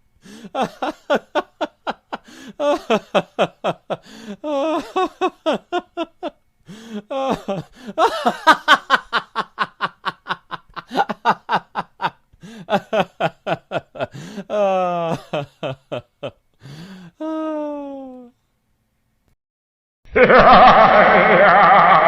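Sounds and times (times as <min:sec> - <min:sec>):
comic laughter: 0:00.4 - 0:06.4, 0:07.0 - 0:16.4, 0:20.1 - 0:22.0.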